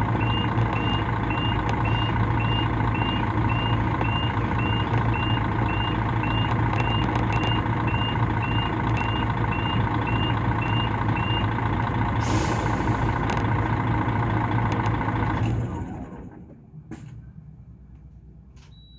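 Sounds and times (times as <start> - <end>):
diesel bus engine running: 0.0 - 18.6
reversing alarm beeps: 0.2 - 11.5
air hiss: 12.2 - 13.2.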